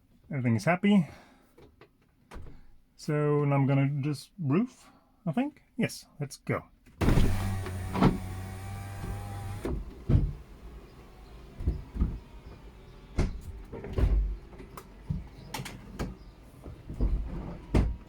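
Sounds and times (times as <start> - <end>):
electric motor humming: 7.0 - 17.0
roof mechanism clunking: 7.0 - 18.0.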